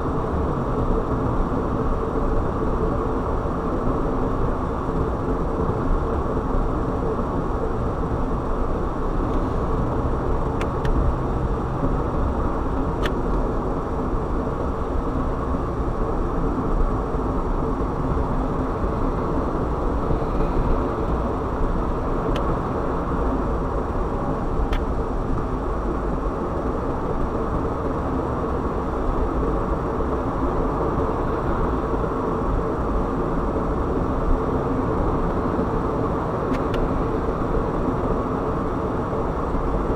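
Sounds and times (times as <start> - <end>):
car driving on road: 0.0 - 39.9.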